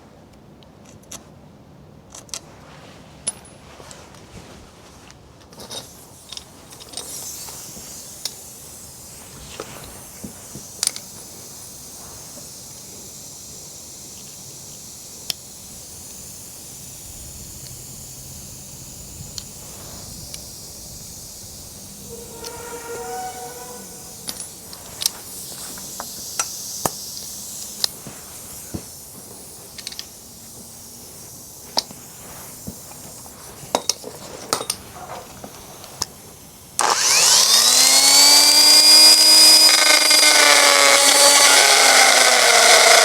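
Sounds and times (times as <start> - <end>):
steady high hiss: 5.9 - 37.3.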